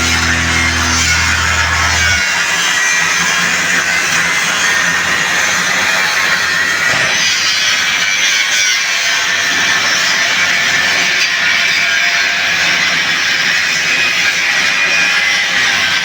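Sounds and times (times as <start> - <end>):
angle grinder grinding metal: 0.0 - 2.2.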